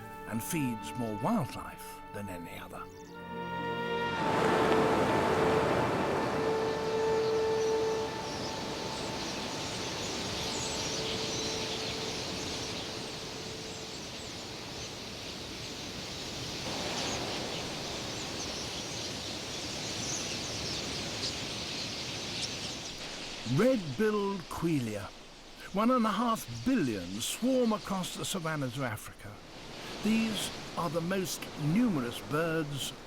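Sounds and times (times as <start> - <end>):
rushing of massed wings: 4.2 - 24.5
high bird chirps: 6.2 - 23.5.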